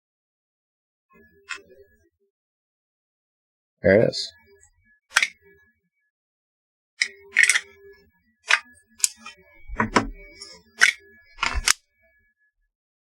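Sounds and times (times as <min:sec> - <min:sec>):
plastic clicks and knocks: 0:10.8 - 0:11.8.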